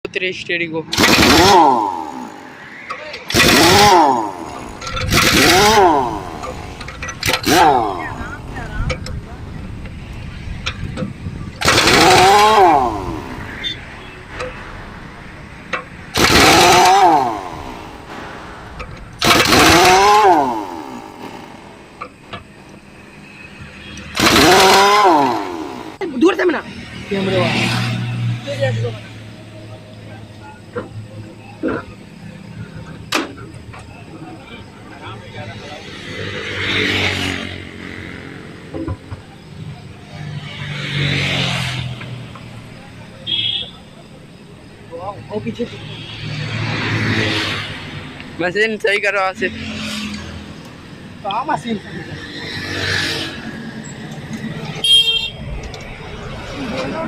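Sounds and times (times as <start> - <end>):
power tool revving: 0.9 - 2.5, 3.3 - 8.6, 11.6 - 13.5, 16.1 - 18.0, 19.2 - 21.6, 23.9 - 26.0.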